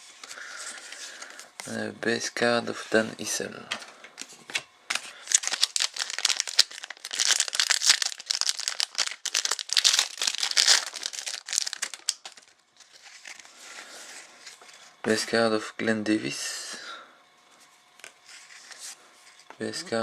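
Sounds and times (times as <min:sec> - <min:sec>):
wrapper tearing and crinkling: 0:04.9 - 0:13.6.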